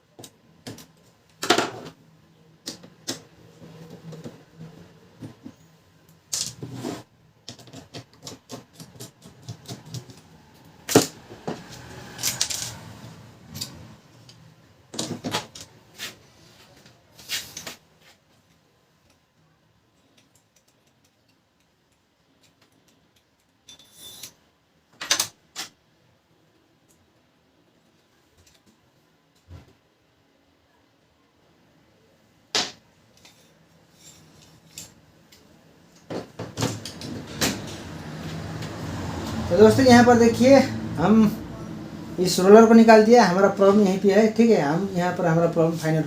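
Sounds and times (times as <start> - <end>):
printer parts clicking and knocking: 7.4 - 10.2.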